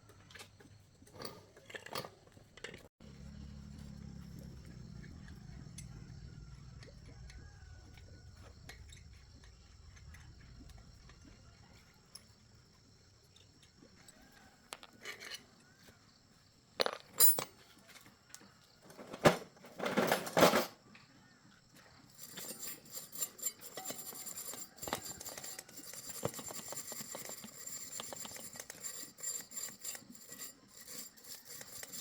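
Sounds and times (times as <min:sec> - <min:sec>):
metal parts and tools clinking: 0:00.3 - 0:02.9, 0:14.2 - 0:15.6, 0:16.8 - 0:18.1, 0:18.9 - 0:20.8, 0:22.0 - 0:32.0
low hum: 0:03.0 - 0:11.4.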